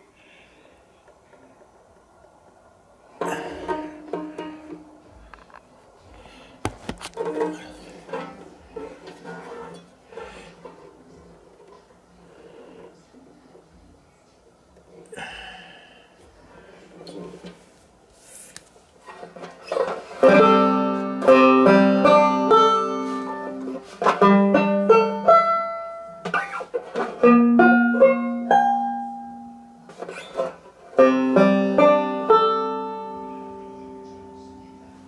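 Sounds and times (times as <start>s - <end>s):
banjo strummed and picked: 3.2s - 5.0s, 7.1s - 10.9s, 19.1s - 35.0s.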